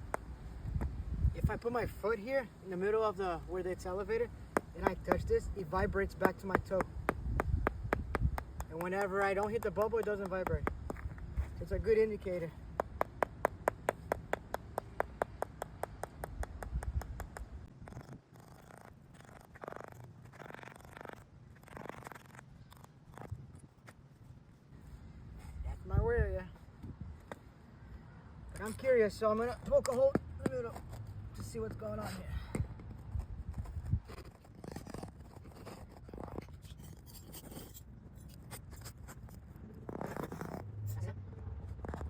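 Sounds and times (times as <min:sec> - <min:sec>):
rasping scrapes on hard court: 0:08.4 - 0:15.4, 0:17.1 - 0:25.7, 0:28.5 - 0:41.0.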